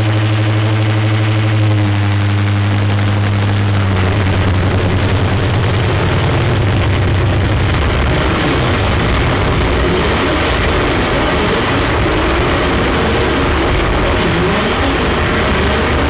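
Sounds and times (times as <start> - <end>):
grinding noise music: 0.0 - 16.0
low droning hum: 0.0 - 16.0.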